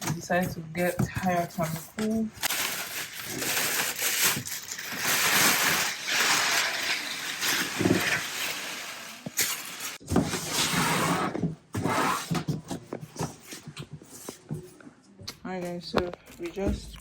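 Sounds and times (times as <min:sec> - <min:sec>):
packaging crackling and rustling: 0:01.4 - 0:10.0.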